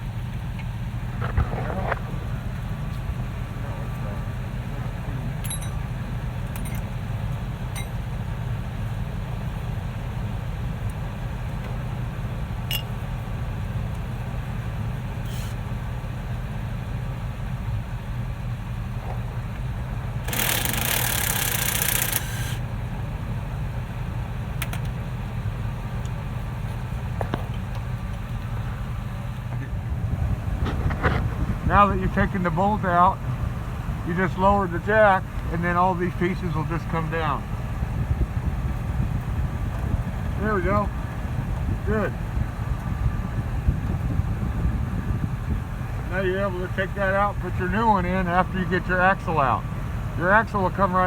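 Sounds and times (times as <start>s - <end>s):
low engine-like hum: 0.0s - 51.0s
hand tools clinking on metal: 5.4s - 5.9s, 6.5s - 6.9s, 7.7s - 8.1s, 12.7s - 13.0s.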